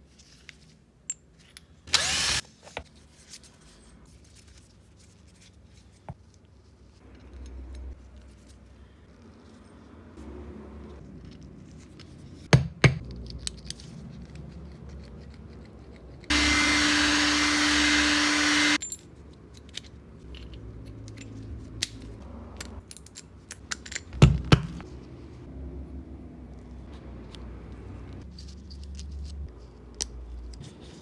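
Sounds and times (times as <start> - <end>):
angle grinder whine: 1.9 - 2.4, 16.3 - 18.8.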